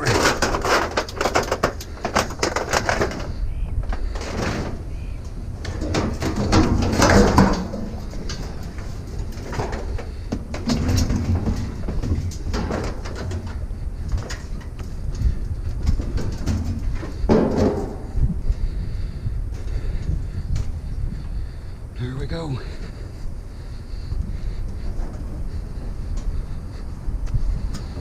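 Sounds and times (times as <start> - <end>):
heavy tub scraping on trailer bed: 5.5 - 13.6
knocks: 17.2 - 18.2.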